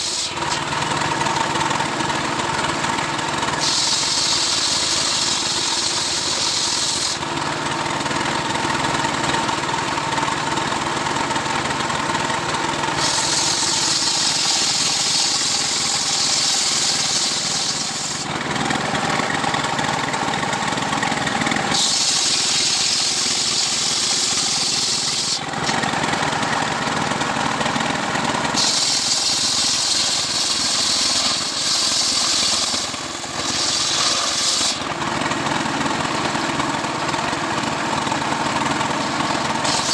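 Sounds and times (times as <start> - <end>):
chainsaw cutting wood: 3.5 - 7.3, 12.9 - 19.4, 20.8 - 27.3, 28.2 - 35.8, 38.4 - 39.9.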